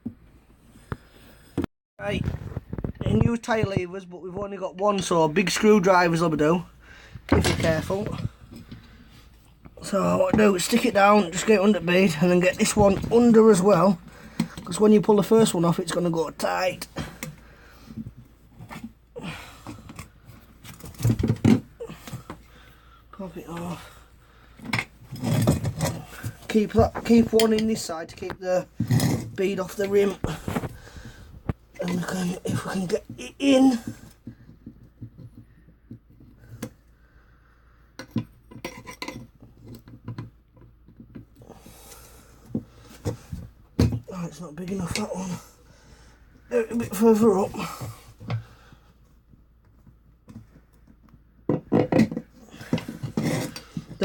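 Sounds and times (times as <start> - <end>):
screwdrivers scraping wheel rim: 52.5 - 54.0.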